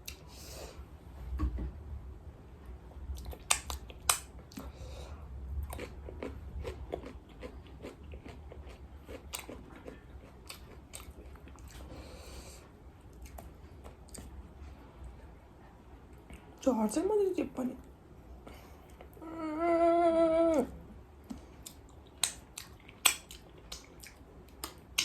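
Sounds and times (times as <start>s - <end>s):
crunching and chewing fried chicken: 5.6s - 12.2s, 21.3s - 25.0s.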